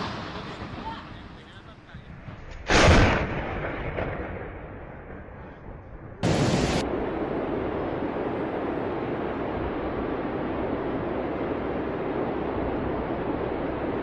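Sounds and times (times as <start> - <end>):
loud boom: 2.2 - 7.0
steady rushing noise: 6.1 - 14.0.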